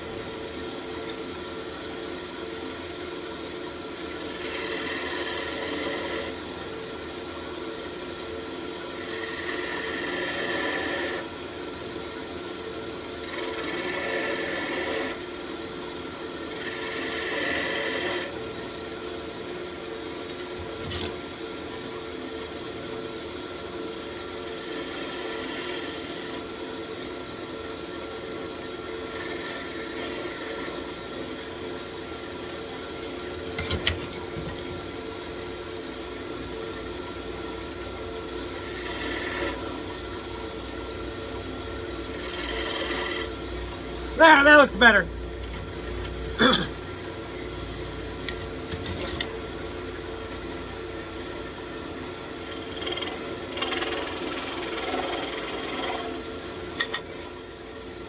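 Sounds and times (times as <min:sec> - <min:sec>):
wood lathe humming: 0:04.0 - 0:06.2, 0:09.0 - 0:11.2, 0:13.2 - 0:15.1, 0:29.0 - 0:30.8, 0:38.4 - 0:39.6, 0:41.9 - 0:43.9, 0:52.4 - 0:56.2
tool scraping spinning wood: 0:04.0 - 0:06.3, 0:29.0 - 0:30.8, 0:38.4 - 0:39.6, 0:41.8 - 0:43.4, 0:52.4 - 0:56.2.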